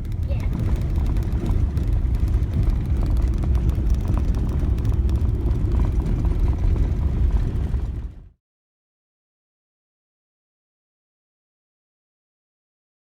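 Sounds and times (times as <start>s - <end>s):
vehicle rumble: 0.0s - 8.4s.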